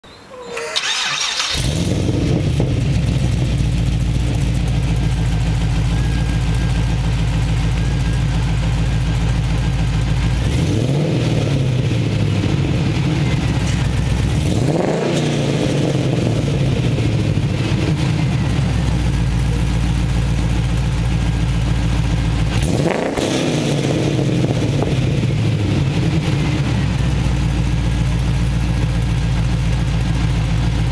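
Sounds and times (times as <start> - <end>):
car engine starting and idling: 0.3 - 30.9
engine revving: 0.8 - 6.6, 9.8 - 19.6, 21.8 - 28.2.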